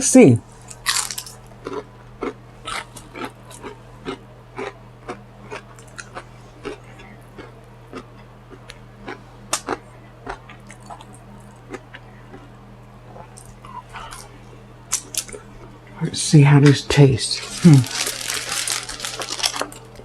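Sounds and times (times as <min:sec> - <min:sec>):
person chewing with lips smacking: 0:00.8 - 0:12.5, 0:13.1 - 0:15.4.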